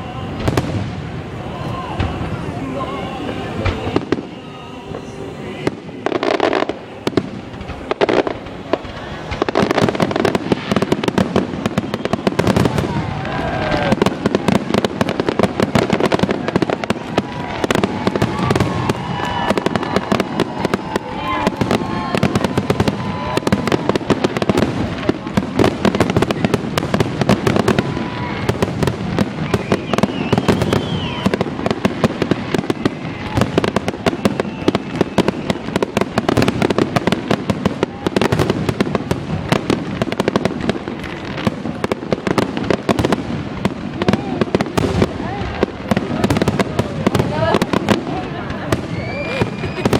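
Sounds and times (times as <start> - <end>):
faint firework whistles: 0.0 - 24.7, 27.4 - 37.0, 46.2 - 49.9
fireworks bangs and crackling: 0.0 - 49.9.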